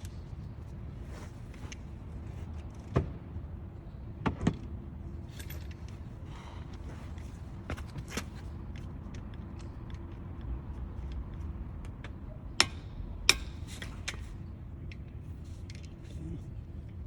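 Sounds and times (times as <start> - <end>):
low steady hum: 0.0 - 17.0
wrench clicking on metal bolts: 12.6 - 14.3.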